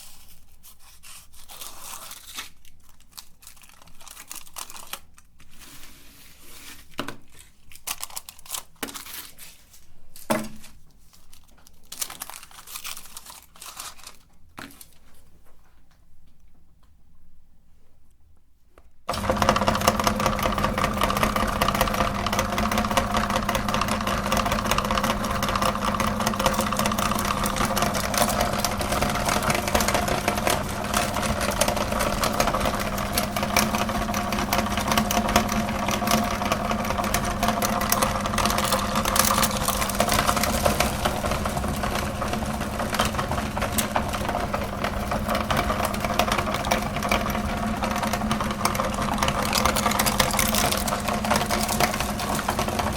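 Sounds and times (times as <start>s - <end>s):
auger crunching chocolate: 1.5s - 5.5s, 7.0s - 9.4s, 10.3s - 15.0s, 19.1s - 52.9s
meat grinder motor humming: 19.1s - 52.9s.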